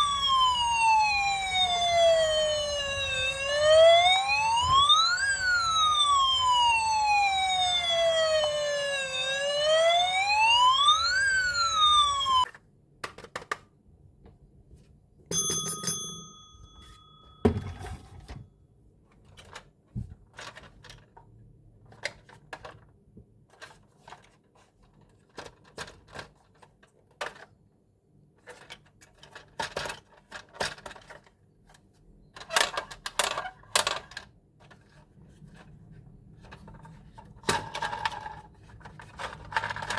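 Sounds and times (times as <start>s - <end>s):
toy police siren wailing: 0.0s - 12.5s
plastic toy parts clicking: 32.4s - 34.4s.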